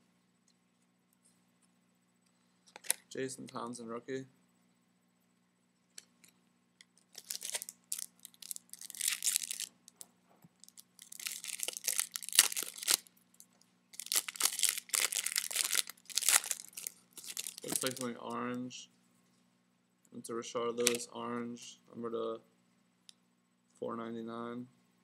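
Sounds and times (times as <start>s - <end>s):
foil wrappers tearing and crinkling: 7.1s - 9.7s, 10.6s - 13.1s, 14.0s - 18.1s.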